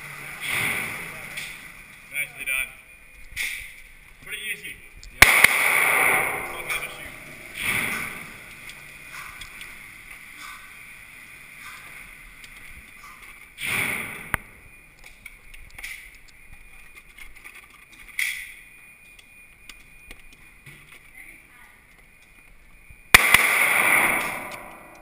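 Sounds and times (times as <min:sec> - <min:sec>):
gunshots: 0:05.2 - 0:08.4, 0:23.1 - 0:25.0.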